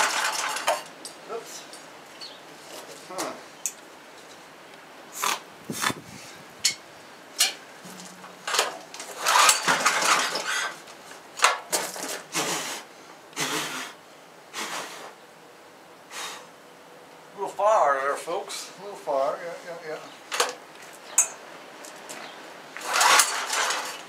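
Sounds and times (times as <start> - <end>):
metal tools clinking and scraping: 0.0 - 3.4, 7.4 - 10.8, 21.1 - 21.4, 22.9 - 24.0.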